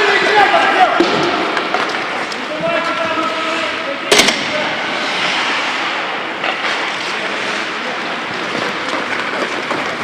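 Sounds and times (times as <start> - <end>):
hockey stick or puck clicks: 1.0 - 2.4
skate blades scraping on ice: 4.6 - 10.0.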